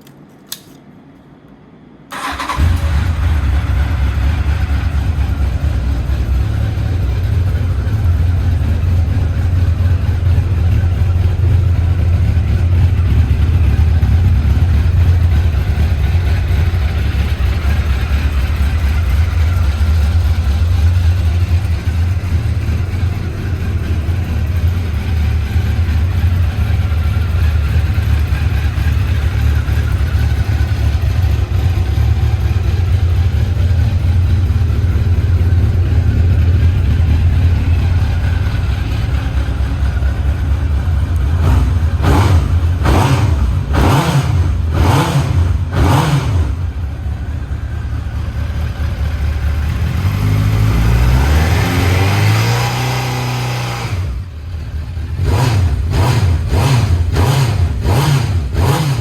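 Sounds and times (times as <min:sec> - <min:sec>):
click: 0:00.0 - 0:01.6
motorcycle engine idling: 0:02.1 - 0:51.2, 0:54.1 - 0:59.0.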